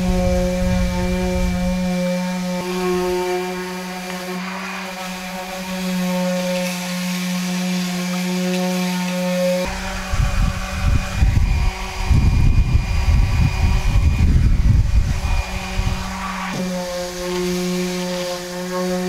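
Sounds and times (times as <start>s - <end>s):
electric sander on wood: 0.0s - 19.0s.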